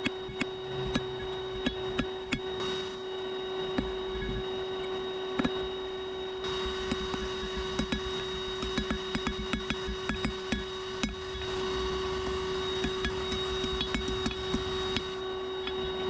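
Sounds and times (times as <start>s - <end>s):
forge blower humming: 0.0s - 16.0s
sharp clicks and taps: 6.8s - 11.2s.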